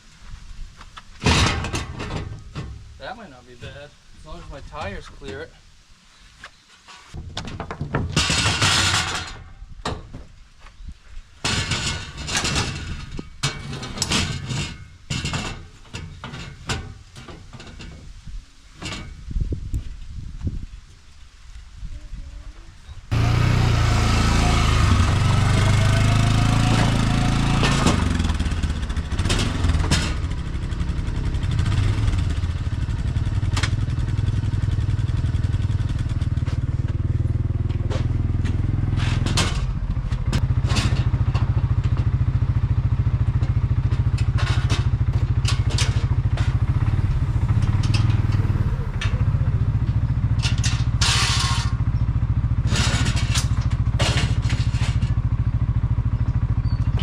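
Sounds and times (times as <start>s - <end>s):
atv engine running: 23.1s - 57.0s.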